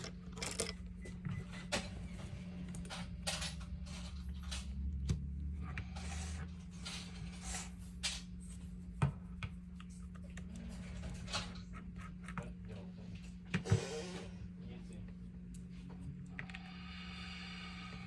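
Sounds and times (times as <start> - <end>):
low electrical hum: 0.0 - 18.0.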